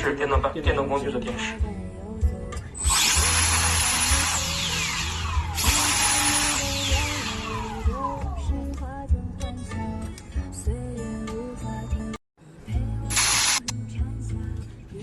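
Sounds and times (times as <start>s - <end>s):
soft background music: 0.0s - 4.4s
air blower rush and whine: 2.9s - 8.5s.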